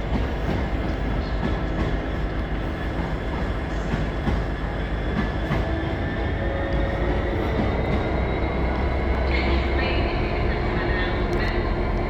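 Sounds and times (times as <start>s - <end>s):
train rumbling: 0.0s - 12.0s.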